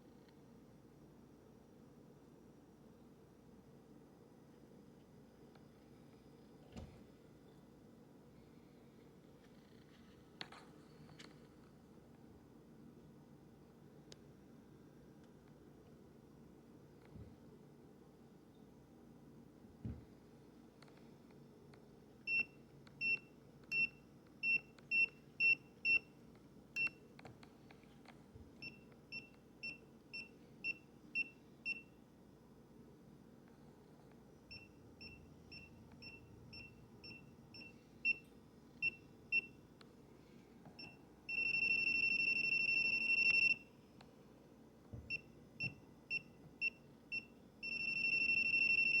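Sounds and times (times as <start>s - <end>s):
long steady tone: 40.7s - 43.8s, 45.2s - 49.0s.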